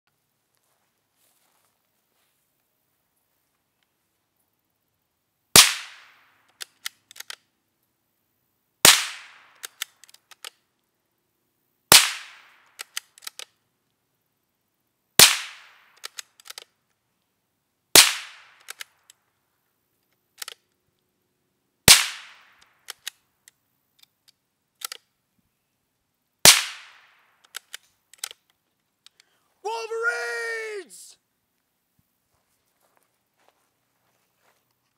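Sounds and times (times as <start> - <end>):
rifle shots: 5.6 - 6.1, 11.9 - 12.5, 15.2 - 15.7, 18.0 - 18.6, 21.9 - 22.4, 26.4 - 27.2
small clicks: 6.4 - 7.5, 9.5 - 10.9, 12.6 - 14.0, 15.9 - 17.3, 18.5 - 19.2, 20.0 - 21.1, 22.5 - 25.2, 27.3 - 29.4.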